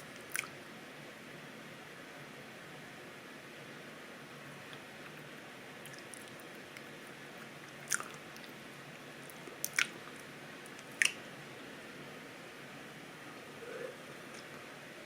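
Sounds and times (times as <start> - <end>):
faint steady hiss: 0.0 - 15.0
mouth chewing smacks: 5.8 - 8.6, 9.3 - 11.2.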